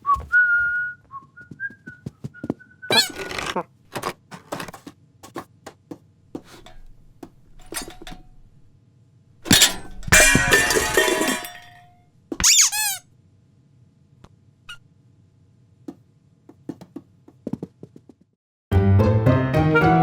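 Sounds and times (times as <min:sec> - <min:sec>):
glass breaking crash: 0:09.5 - 0:11.8.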